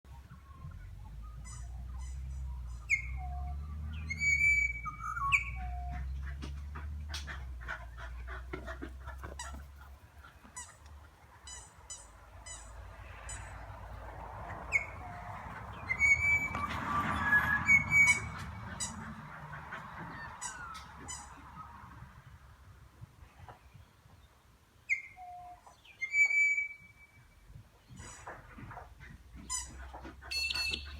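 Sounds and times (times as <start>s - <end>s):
harsh honking bird calls: 9.1s - 21.5s, 29.5s - 30.9s
high bird chirps: 30.3s - 30.9s.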